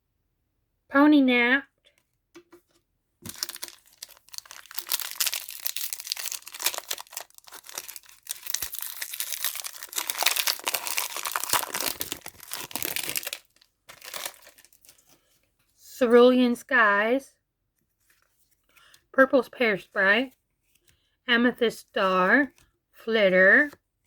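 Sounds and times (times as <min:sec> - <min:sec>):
foil wrapper crinkling: 0:03.2 - 0:15.2.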